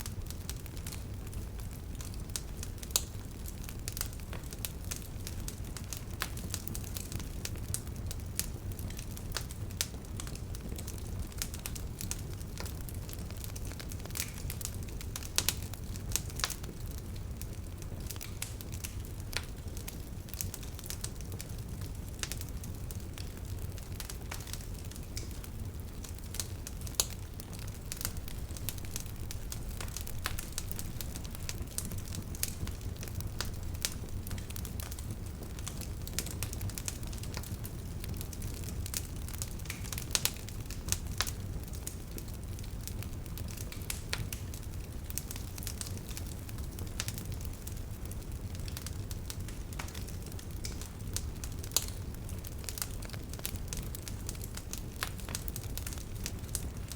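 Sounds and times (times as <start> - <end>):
bonfire crackling and popping: 0.0 - 56.9
low rumble of flames: 0.0 - 56.9.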